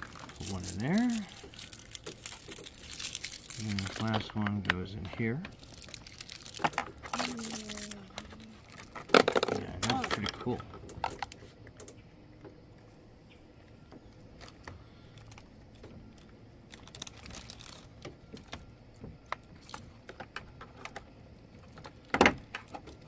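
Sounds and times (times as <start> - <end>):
plastic toy parts clicking: 5.5 - 11.4.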